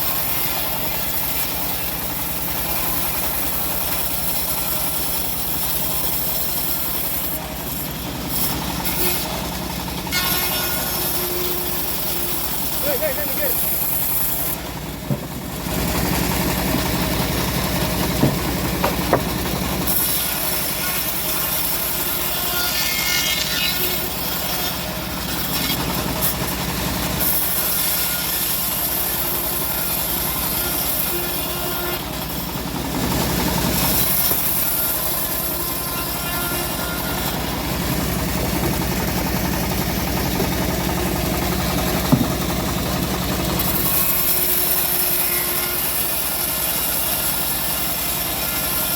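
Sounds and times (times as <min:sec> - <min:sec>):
bandsaw mill engine running: 0:00.0 - 0:48.9
saw blade hissing through log: 0:00.0 - 0:48.9
sharp knocks: 0:15.0 - 0:15.6, 0:17.9 - 0:19.5, 0:41.9 - 0:42.7.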